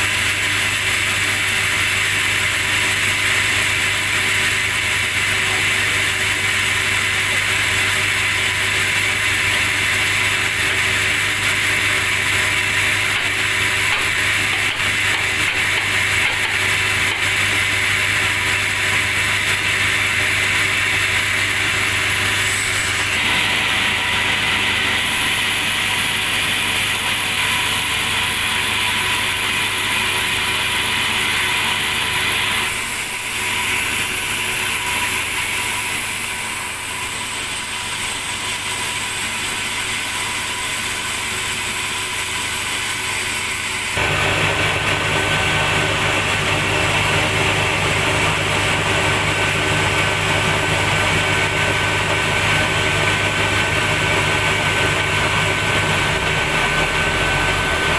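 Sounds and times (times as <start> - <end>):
sawmill hissing grinding: 0.0 - 57.9
low motor hum: 44.0 - 57.9.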